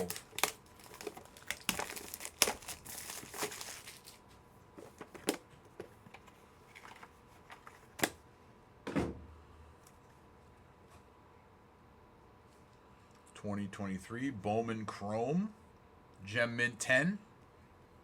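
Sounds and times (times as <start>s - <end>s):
packaging clicks and taps: 0.0s - 4.2s
plastic wrapping crinkling and tearing: 0.0s - 4.3s.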